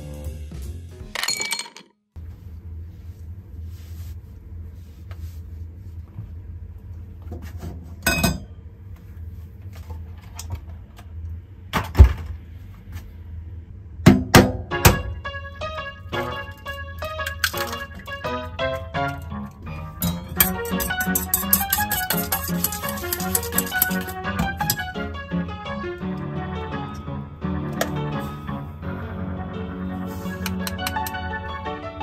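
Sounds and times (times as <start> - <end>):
background music: 0.0 - 1.2, 14.7 - 32.0
dishes and utensils clinking: 19.1 - 24.9.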